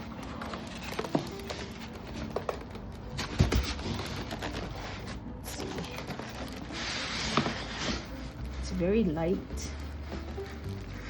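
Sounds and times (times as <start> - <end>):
packaging rustling: 0.0 - 8.6.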